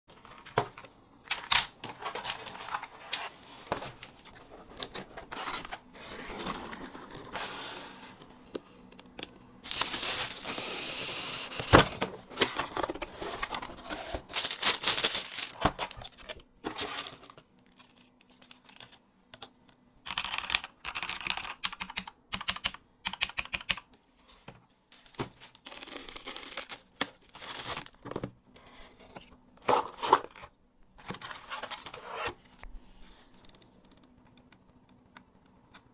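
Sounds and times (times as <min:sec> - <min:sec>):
cardboard and plastic rustling: 0:01.8 - 0:08.2, 0:09.6 - 0:19.0
packaging tearing: 0:14.2 - 0:16.2, 0:25.6 - 0:28.0
mechanical keyboard typing: 0:20.1 - 0:23.9.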